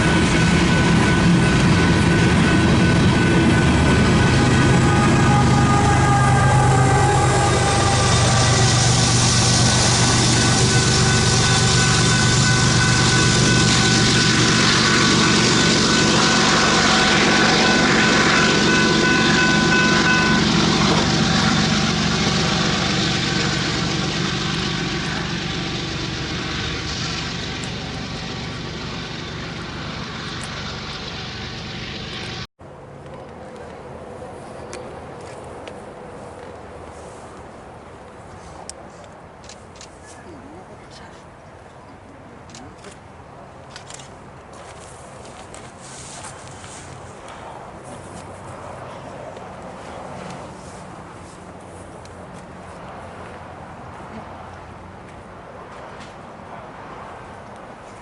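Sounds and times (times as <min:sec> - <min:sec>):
freight train rumbling past: 0:00.0 - 0:39.7, 0:44.2 - 0:58.0
high-pitched wheel squeal: 0:00.3 - 0:30.8.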